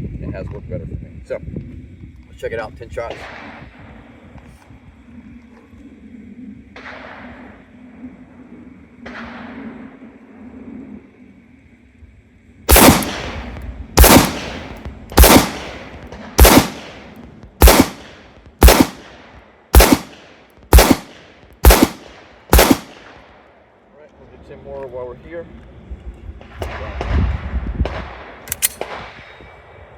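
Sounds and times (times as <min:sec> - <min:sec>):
handgun shots echoing: 0:12.7 - 0:23.2.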